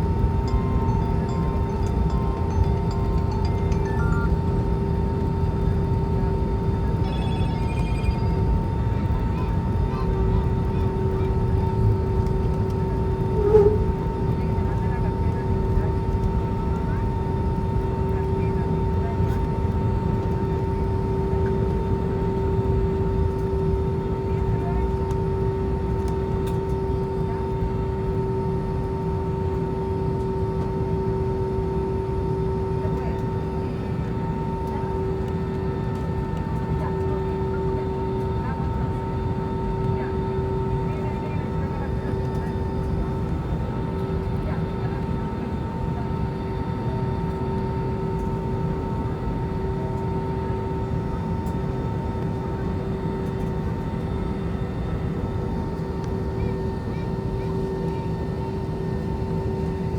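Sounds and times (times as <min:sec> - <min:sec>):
two-note engine whine: 0:00.0 - 0:06.0
airliner cabin engine rumble: 0:00.0 - 0:59.9.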